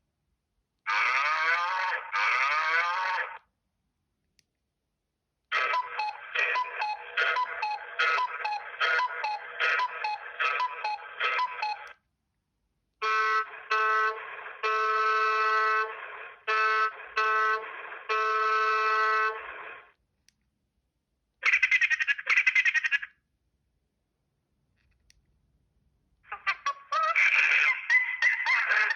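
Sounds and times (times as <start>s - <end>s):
mobile phone ringtones: 5.6s - 11.9s.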